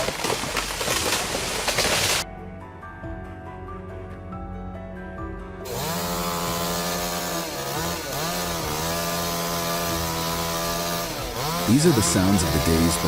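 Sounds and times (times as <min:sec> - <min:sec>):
chainsaw cutting at high revs: 0:00.0 - 0:02.2, 0:05.7 - 0:13.0
background music: 0:01.4 - 0:13.0.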